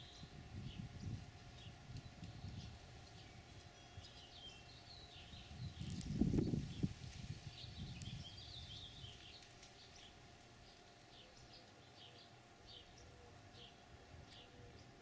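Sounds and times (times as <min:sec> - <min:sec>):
wind gusting on microphone: 0:00.0 - 0:04.2, 0:05.1 - 0:09.3.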